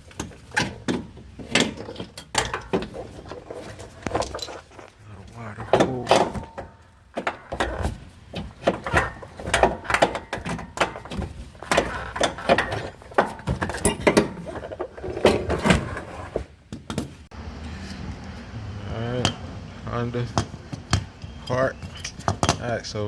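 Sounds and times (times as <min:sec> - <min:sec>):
metallic clanks of tools: 0:00.1 - 0:04.9, 0:05.6 - 0:15.6.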